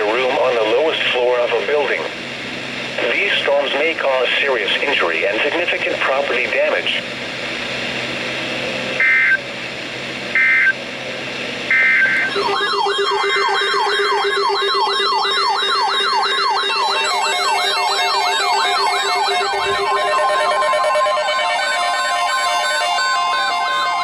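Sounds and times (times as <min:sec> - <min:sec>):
digital data code bursts: 0:09.0 - 0:09.4, 0:10.4 - 0:10.8, 0:11.7 - 0:24.0
electronic siren alarm: 0:09.0 - 0:09.5, 0:10.3 - 0:10.8, 0:11.7 - 0:24.0.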